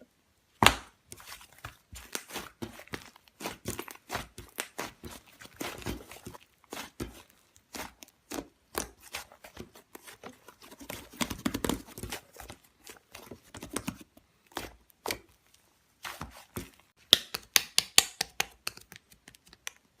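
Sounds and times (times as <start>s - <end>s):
slime squished by hand: 0.6s - 16.8s.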